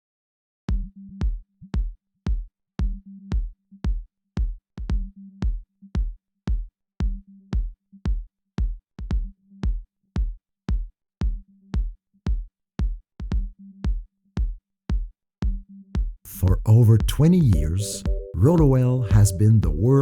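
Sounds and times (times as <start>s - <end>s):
drum machine beat: 16.3s - 20.0s
held low synth note: 16.3s - 20.0s.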